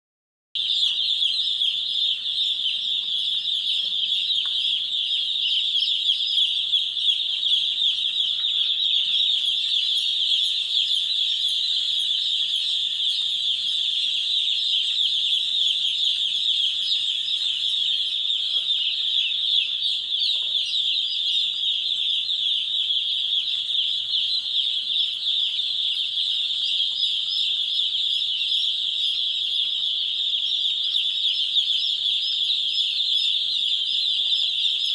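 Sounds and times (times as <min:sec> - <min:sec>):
chicks peeping: 0:00.6 - 0:34.9.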